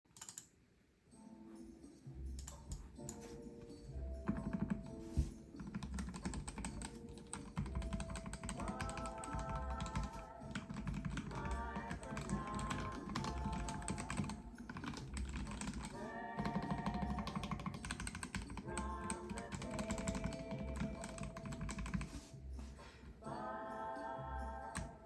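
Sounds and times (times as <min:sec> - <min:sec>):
mechanical keyboard typing: 0:00.1 - 0:00.5, 0:04.2 - 0:05.0, 0:05.6 - 0:22.2
background music: 0:00.3 - 0:25.0.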